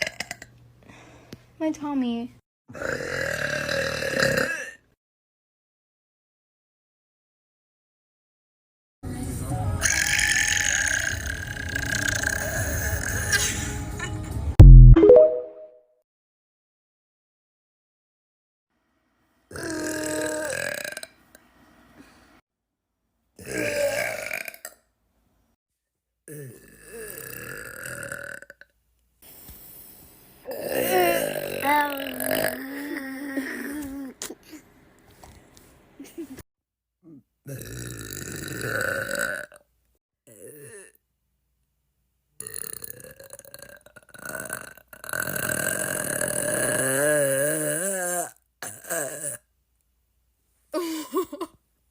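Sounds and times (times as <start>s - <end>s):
woman burping: 2.7s - 4.8s, 30.5s - 34.1s, 40.3s - 41.0s, 42.4s - 49.4s.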